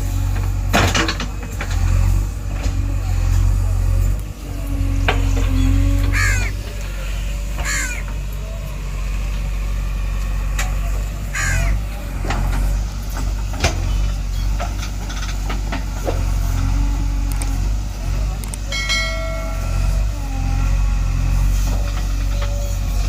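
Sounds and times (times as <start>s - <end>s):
diesel engine running: 0.0s - 23.0s
crow cawing: 5.8s - 7.0s, 7.6s - 8.2s, 11.3s - 11.8s.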